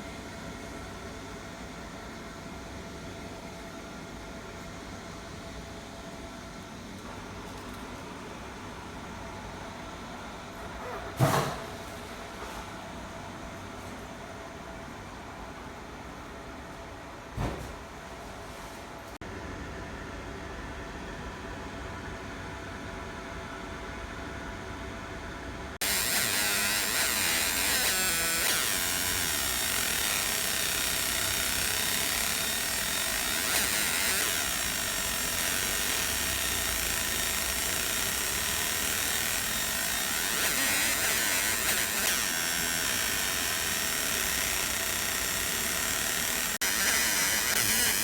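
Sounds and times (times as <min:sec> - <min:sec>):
laser engraver buzzing hiss: 0:25.8 - 0:48.0.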